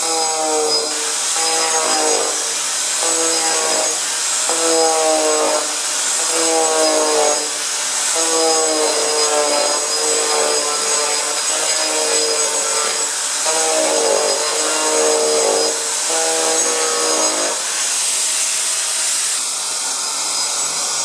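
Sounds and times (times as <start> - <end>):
floor grinder grinding wood: 0.0 - 21.0.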